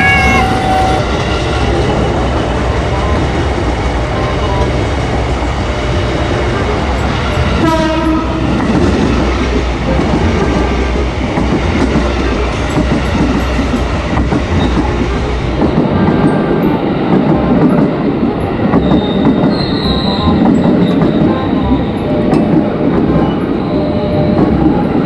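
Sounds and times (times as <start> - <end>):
vehicle horn blast: 7.6 - 8.4.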